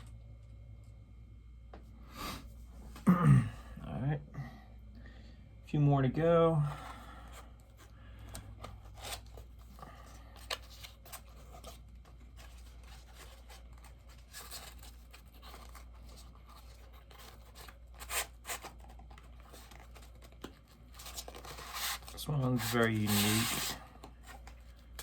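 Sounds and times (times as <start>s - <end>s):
packaging rustling and clicking: 8.2s - 22.2s.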